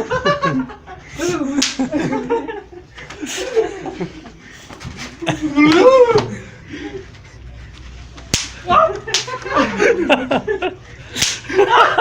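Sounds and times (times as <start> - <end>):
sharp cracks: 1.6 - 1.9, 8.3 - 9.5, 11.2 - 11.5
young men's voices: 5.2 - 7.6.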